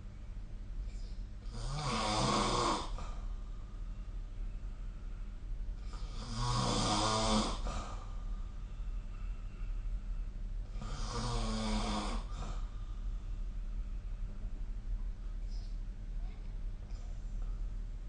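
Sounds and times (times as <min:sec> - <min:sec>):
steady low hum: 0:00.0 - 0:18.0
person snoring: 0:01.5 - 0:03.2, 0:05.8 - 0:08.0, 0:10.7 - 0:12.7.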